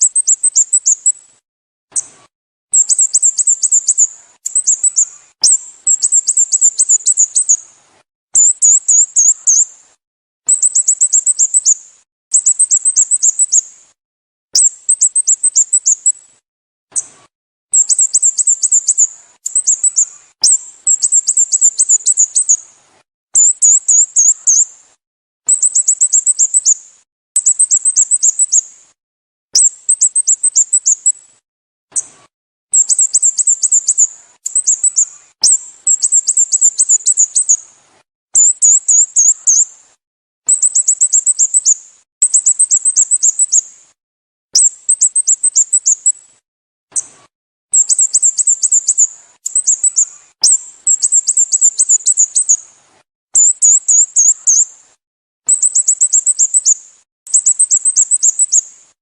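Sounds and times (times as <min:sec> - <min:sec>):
bulbul calling: 0:00.0 - 0:01.1, 0:02.7 - 0:07.6, 0:08.4 - 0:09.7, 0:10.5 - 0:11.8, 0:12.4 - 0:13.6, 0:17.7 - 0:22.6, 0:23.4 - 0:24.6, 0:25.5 - 0:26.8, 0:27.4 - 0:28.6, 0:32.7 - 0:37.6, 0:38.4 - 0:39.6, 0:40.5 - 0:43.6, 0:47.7 - 0:52.6, 0:53.4 - 0:54.6, 0:55.5 - 0:56.8, 0:57.4 - 0:58.6.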